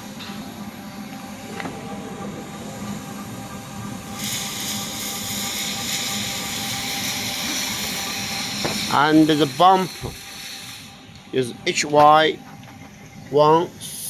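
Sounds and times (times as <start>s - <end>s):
hydraulic power unit humming: 0.0s - 14.0s
loud even hiss: 4.1s - 11.0s, 13.8s - 14.0s.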